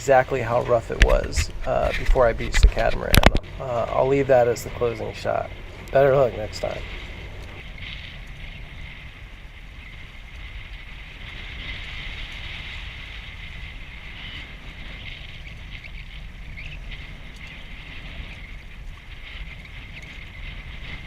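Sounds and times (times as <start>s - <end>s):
rough water rushing: 0.0s - 14.9s
strong wind: 0.0s - 21.0s.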